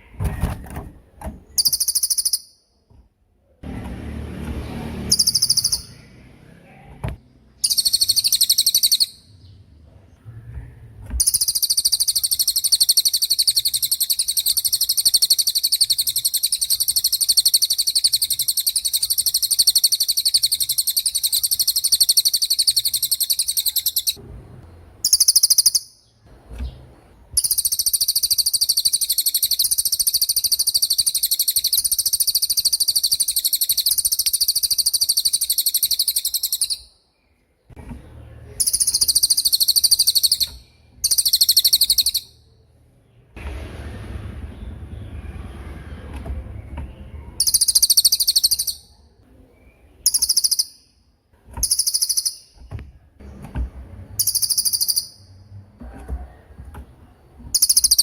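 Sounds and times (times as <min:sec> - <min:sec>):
songbird rapid high-pitched trill: 0:01.6 - 0:02.6, 0:05.1 - 0:06.1, 0:07.6 - 0:09.4, 0:11.2 - 0:24.2, 0:27.4 - 0:36.9, 0:38.6 - 0:42.4, 0:47.4 - 0:48.9, 0:50.0 - 0:50.9, 0:51.6 - 0:52.6, 0:54.2 - 0:55.3.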